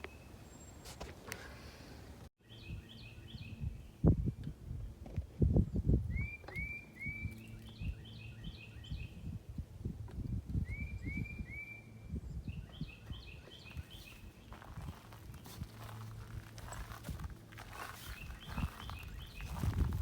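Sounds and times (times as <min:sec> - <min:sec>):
songbird singing: 0:00.0 - 0:01.6, 0:02.4 - 0:05.0, 0:05.6 - 0:09.5, 0:10.1 - 0:20.0
low thumps and rustles: 0:13.7 - 0:20.0.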